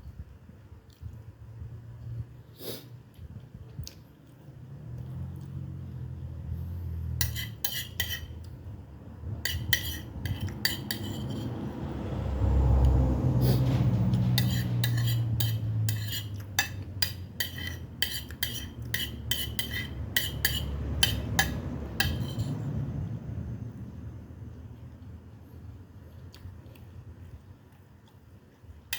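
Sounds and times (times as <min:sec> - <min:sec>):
low rumbling background: 0:03.1 - 0:17.0
cutlery clinking on plates: 0:07.2 - 0:08.3, 0:09.4 - 0:11.5, 0:14.1 - 0:22.5.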